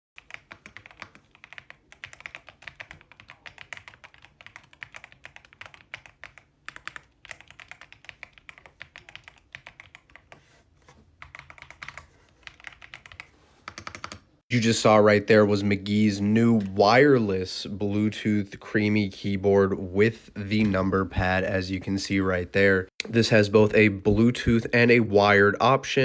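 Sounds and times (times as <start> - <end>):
mechanical keyboard typing: 0.2 - 10.4, 11.2 - 14.3.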